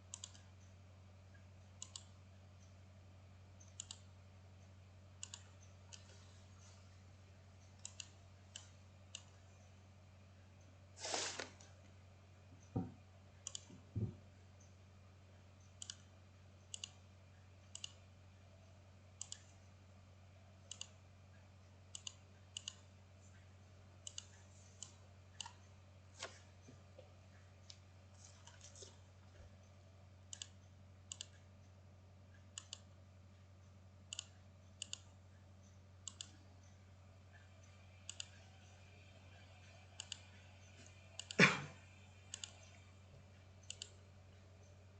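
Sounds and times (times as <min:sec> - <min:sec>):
faint steady low hum: 0:00.0 - 0:44.9
computer mouse clicks: 0:00.1 - 0:00.5, 0:01.8 - 0:02.1, 0:03.6 - 0:04.1, 0:05.2 - 0:06.7, 0:07.6 - 0:09.4, 0:13.4 - 0:13.8, 0:15.6 - 0:17.0, 0:17.7 - 0:18.0, 0:19.2 - 0:19.5, 0:20.7 - 0:21.0, 0:21.9 - 0:22.8, 0:24.0 - 0:25.6, 0:30.3 - 0:31.4, 0:32.3 - 0:32.9, 0:34.1 - 0:35.1, 0:36.0 - 0:36.4, 0:37.3 - 0:38.7, 0:39.3 - 0:41.5, 0:42.3 - 0:42.8, 0:43.6 - 0:44.0.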